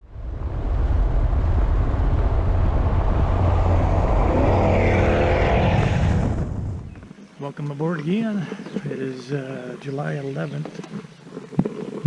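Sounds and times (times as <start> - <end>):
car engine revving: 0.0 - 6.9.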